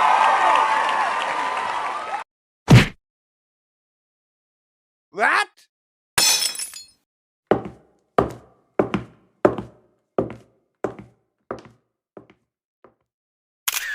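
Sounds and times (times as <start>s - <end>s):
evenly spaced knocks: 7.5s - 11.7s.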